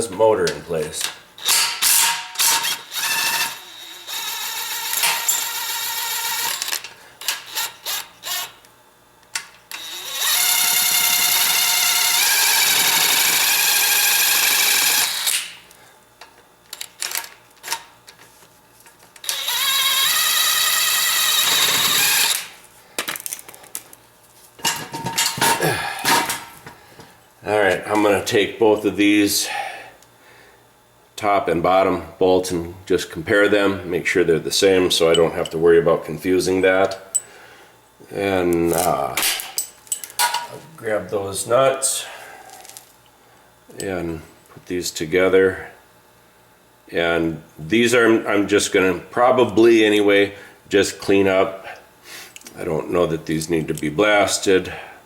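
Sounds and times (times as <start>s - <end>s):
power tool motor whining: 1.4s - 8.6s, 9.7s - 15.5s, 19.2s - 22.5s.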